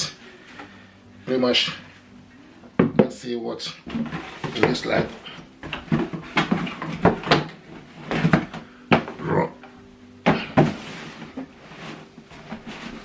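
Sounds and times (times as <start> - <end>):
cardboard and plastic rustling: 3.8 - 13.0.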